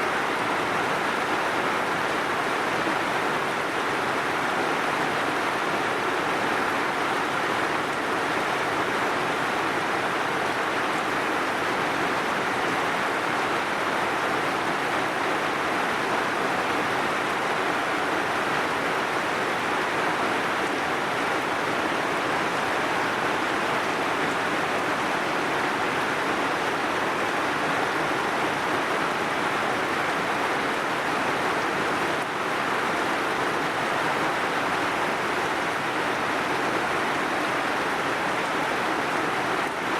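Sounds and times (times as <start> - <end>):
heavy rain: 0.0 - 39.9.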